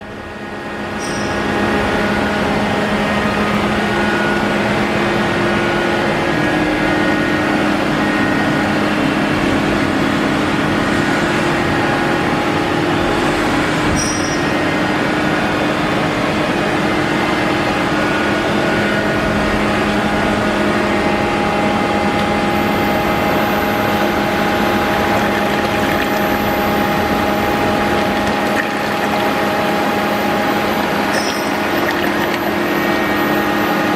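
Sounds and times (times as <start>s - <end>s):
pump running: 19.6s - 33.9s.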